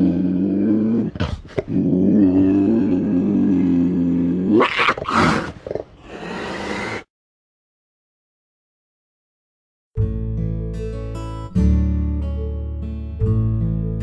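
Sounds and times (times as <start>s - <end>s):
cougar growling and snarling: 0.0s - 7.1s.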